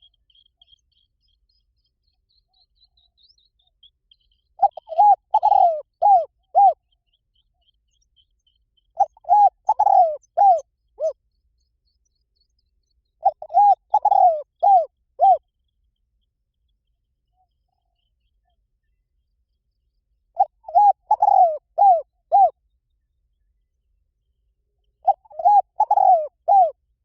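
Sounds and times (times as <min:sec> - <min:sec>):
small bird twittering: 0:00.0 - 0:16.2
dove cooing: 0:04.6 - 0:06.8, 0:09.0 - 0:11.2, 0:13.2 - 0:15.4, 0:20.4 - 0:22.6, 0:25.0 - 0:26.8.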